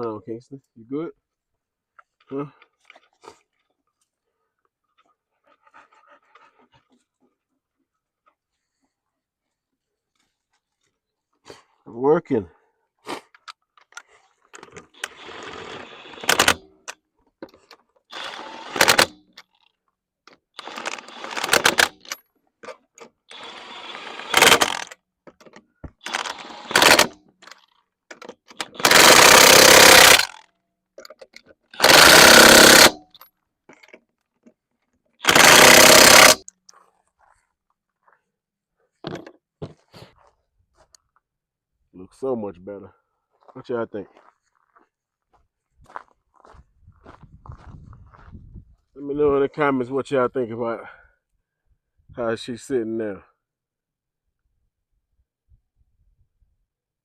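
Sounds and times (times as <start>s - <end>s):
impact wrench rattling: 16.2s - 16.6s, 18.2s - 19.2s, 20.6s - 22.1s, 24.0s - 30.4s, 31.0s - 33.9s, 35.2s - 36.5s.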